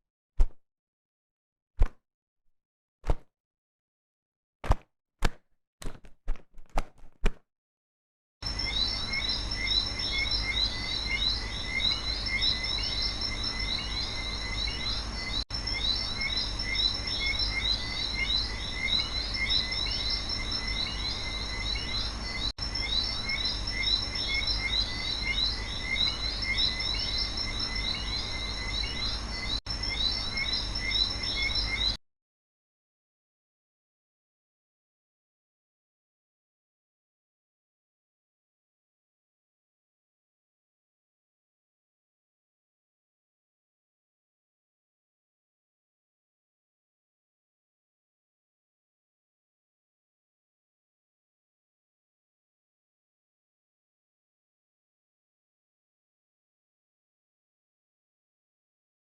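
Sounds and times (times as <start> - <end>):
small chirping calls: 8.4 - 32.0.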